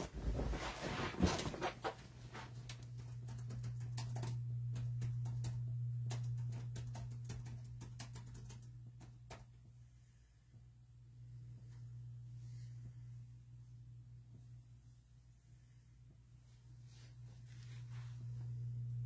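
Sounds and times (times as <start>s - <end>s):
steady low hum: 0.0s - 19.0s
rustling handling noise: 16.4s - 18.7s.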